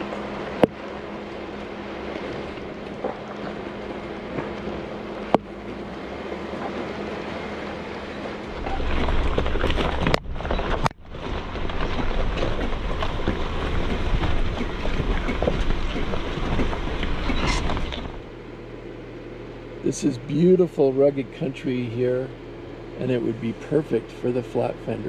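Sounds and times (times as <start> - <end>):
vehicle rumbling on rocky road: 0.0 - 25.0
knocks and rattles: 8.6 - 18.2.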